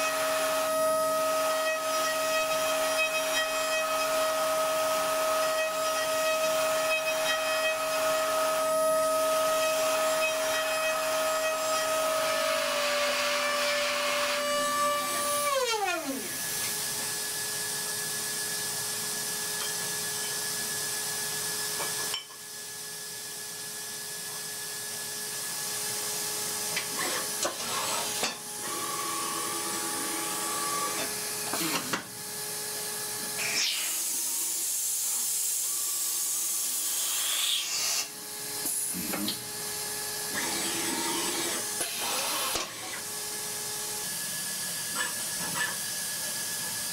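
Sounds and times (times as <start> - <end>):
machine-tool motor whining: 26.9 - 46.8
hiss: 33.4 - 38.1.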